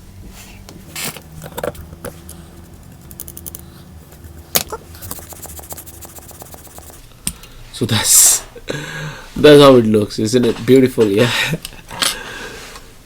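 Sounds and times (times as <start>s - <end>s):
steady low hum: 0.0s - 13.0s
small objects clicking: 3.0s - 3.6s
rapid ticking: 5.0s - 7.1s.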